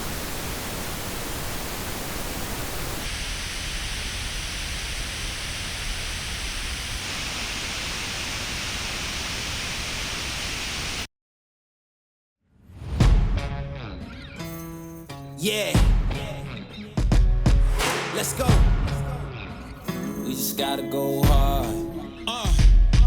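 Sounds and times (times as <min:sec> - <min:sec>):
pink noise hiss: 0:00.0 - 0:11.1.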